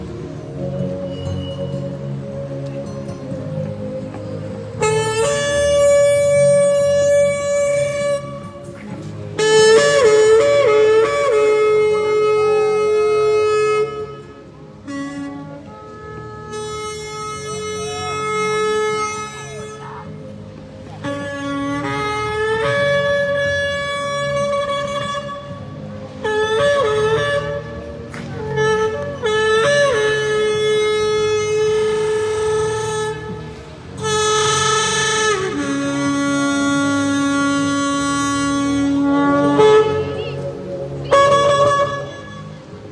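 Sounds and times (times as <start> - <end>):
ram's horn blown in long notes: 0.0 - 42.9
shofar blasts: 4.7 - 42.9.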